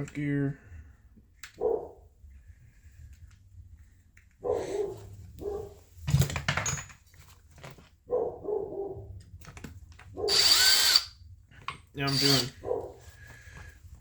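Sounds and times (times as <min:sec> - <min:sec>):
dog barking: 0:01.6 - 0:02.0, 0:04.4 - 0:05.8, 0:08.1 - 0:09.0, 0:12.6 - 0:13.0.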